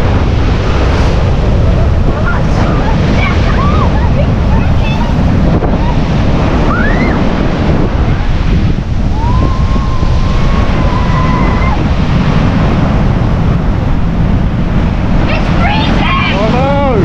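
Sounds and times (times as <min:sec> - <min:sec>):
sea surf breaking: 0:00.0 - 0:17.0
wind buffeting microphone: 0:00.0 - 0:17.0.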